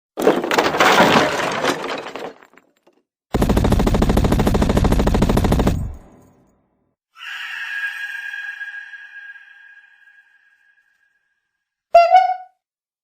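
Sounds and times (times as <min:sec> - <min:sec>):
automatic gunfire burst: 0:03.3 - 0:06.0.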